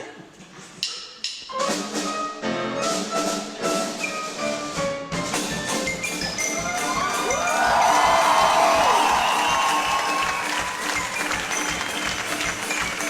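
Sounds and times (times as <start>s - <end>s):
lively orchestral music: 1.2s - 13.0s
xylophone notes: 5.2s - 13.0s.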